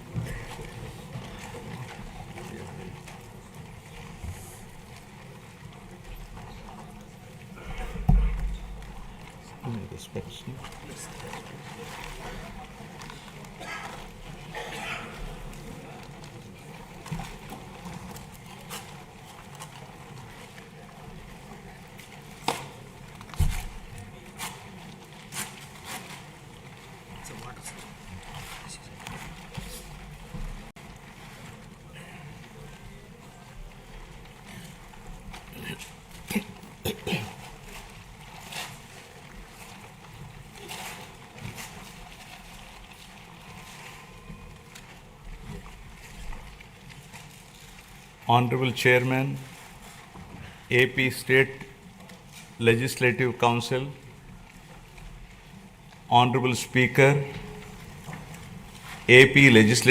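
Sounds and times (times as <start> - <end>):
soft knocks and rustles: 0.0 - 9.7, 16.2 - 31.8, 57.4 - 59.1
large hall hum: 0.0 - 59.9
low thud: 7.7 - 9.1.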